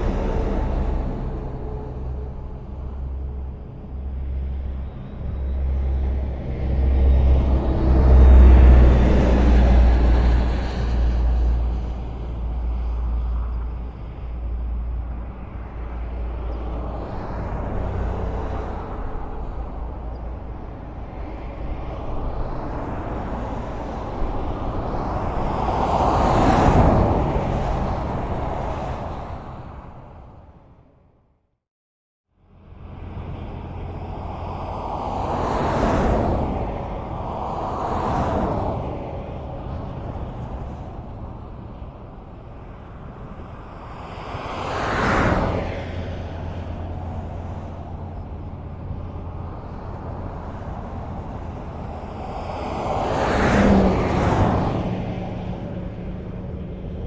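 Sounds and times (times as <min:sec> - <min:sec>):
vehicle whooshing by: 0:00.0 - 0:04.6, 0:43.8 - 0:57.0
highway traffic rumble: 0:00.0 - 0:31.5, 0:32.3 - 0:57.0.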